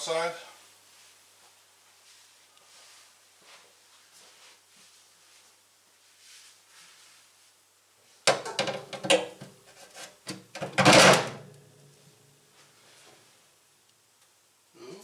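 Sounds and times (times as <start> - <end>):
metal parts clanking: 8.3 - 11.4.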